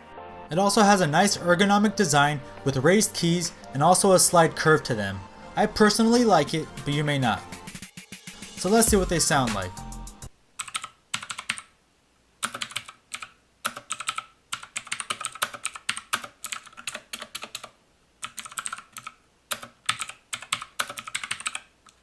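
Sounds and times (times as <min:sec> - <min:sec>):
mechanical keyboard typing: 0:10.6 - 0:11.7, 0:12.4 - 0:22.0.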